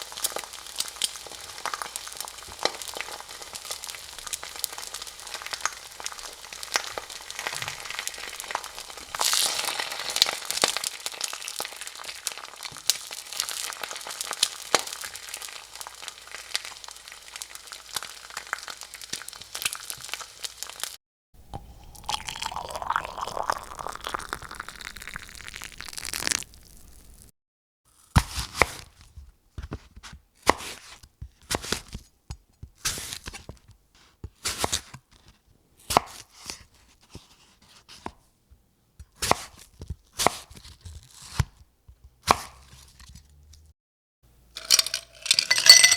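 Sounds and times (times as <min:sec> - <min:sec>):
dense crackling: 0:22.8 - 0:27.3.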